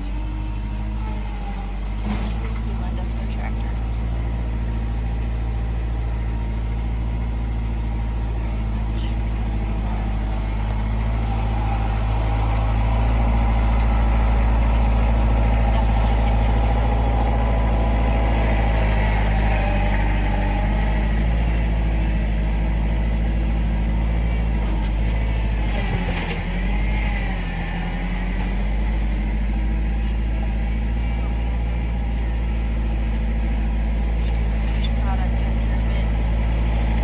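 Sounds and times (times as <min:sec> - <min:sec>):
tractor engine running: 0:00.0 - 0:37.0.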